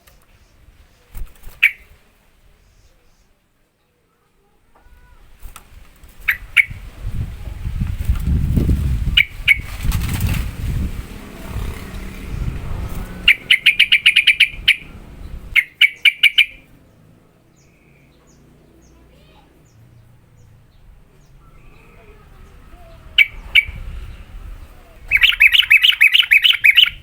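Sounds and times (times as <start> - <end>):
bird rapid-fire calls: 1.1 - 2.0, 6.2 - 6.9, 9.0 - 10.2, 12.9 - 16.7, 21.2 - 27.0
low rumble: 6.8 - 15.6
faint bird chirps: 15.6 - 16.8, 17.5 - 27.0.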